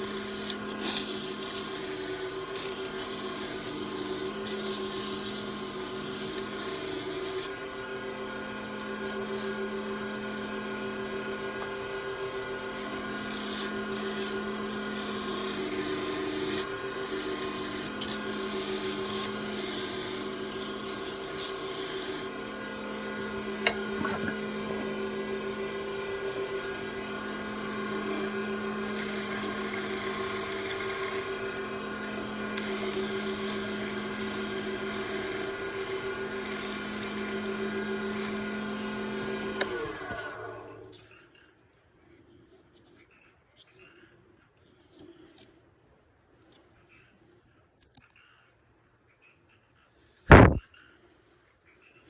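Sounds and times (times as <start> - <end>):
lathe motor humming: 0.0 - 41.0
tool scraping spinning wood: 0.0 - 41.2.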